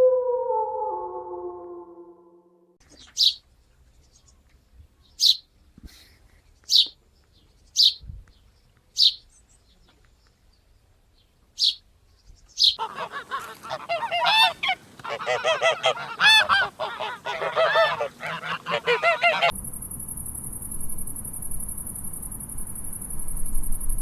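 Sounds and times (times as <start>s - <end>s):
bird chirping: 2.8s - 3.4s, 11.6s - 24.0s
geese honking: 12.8s - 19.6s.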